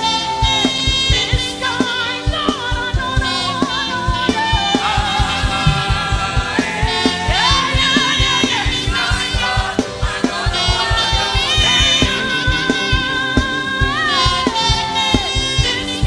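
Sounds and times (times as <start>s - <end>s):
live gospel band music: 0.0s - 16.0s
singing: 0.0s - 16.0s
fast drum beat: 4.1s - 16.0s.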